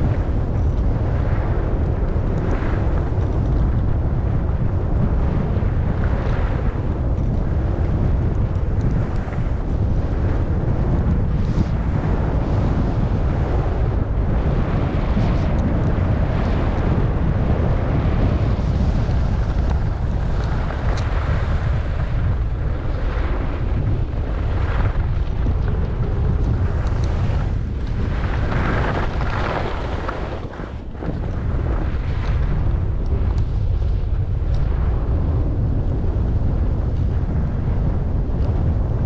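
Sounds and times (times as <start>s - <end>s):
wind rushing over microphone: 0.0s - 39.0s
skis scraping on snow: 7.5s - 35.3s.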